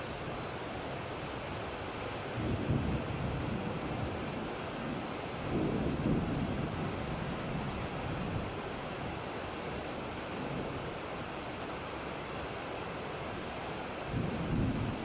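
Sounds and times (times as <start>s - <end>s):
low thunder rumble: 2.4s - 8.5s, 14.1s - 15.0s.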